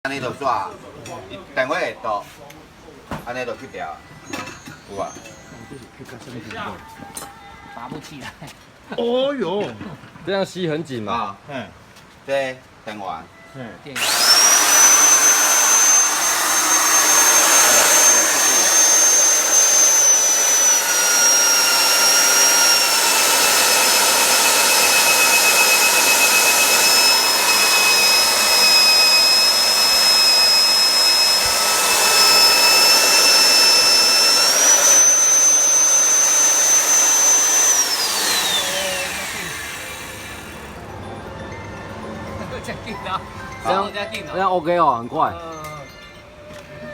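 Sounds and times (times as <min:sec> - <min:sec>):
drill motor whining: 0:14.0 - 0:40.9.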